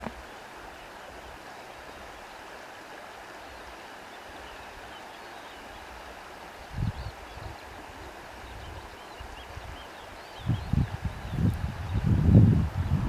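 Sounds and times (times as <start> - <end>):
wind rustling grass: 5.7 - 13.0
low wind rumble: 10.4 - 13.0.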